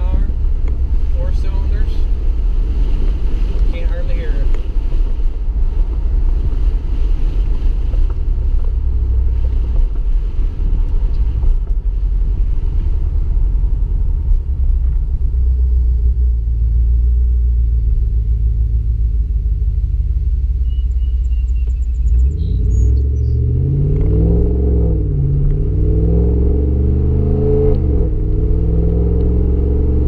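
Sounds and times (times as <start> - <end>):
low exhaust rumble inside cab: 0.0 - 30.0.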